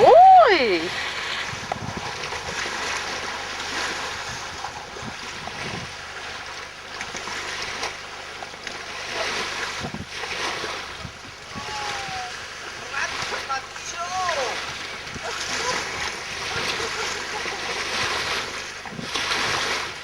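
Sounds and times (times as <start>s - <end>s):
wind blowing across microphone: 0.0s - 2.9s, 4.1s - 6.0s, 9.7s - 13.1s.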